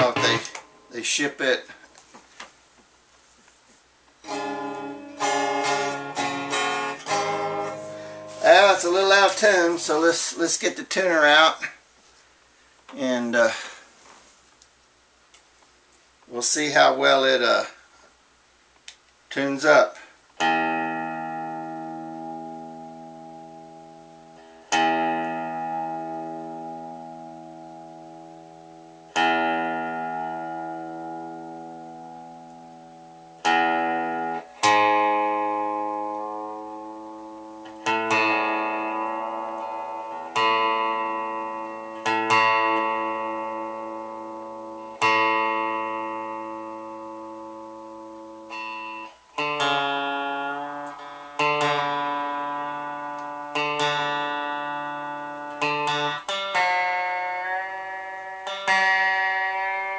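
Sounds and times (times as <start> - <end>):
electric guitar strings plucked: 0.0 - 1.2, 4.2 - 10.1, 20.4 - 59.9.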